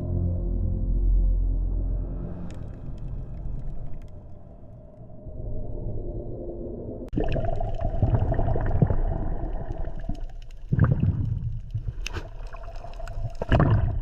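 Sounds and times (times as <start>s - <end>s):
low rumble: 0.0s - 14.0s
water gurgling and splashing: 7.1s - 14.0s.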